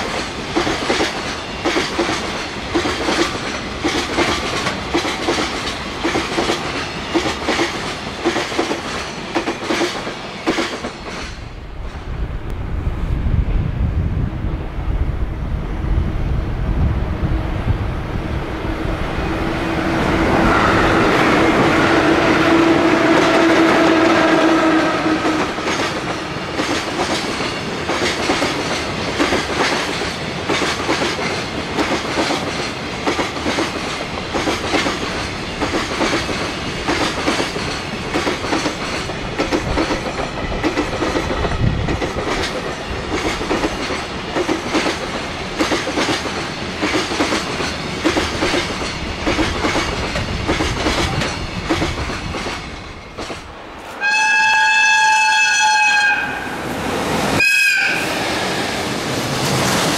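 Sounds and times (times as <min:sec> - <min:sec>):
train rumble: 0:00.0 - 0:59.9
locomotive horn: 0:19.4 - 0:25.6, 0:54.0 - 0:56.6, 0:57.4 - 0:58.6.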